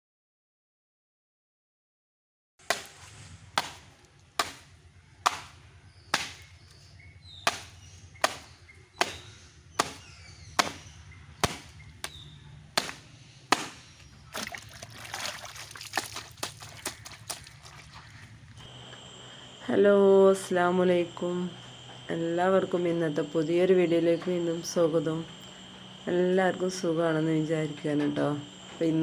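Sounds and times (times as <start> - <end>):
steady low hum: 2.7 - 29.0.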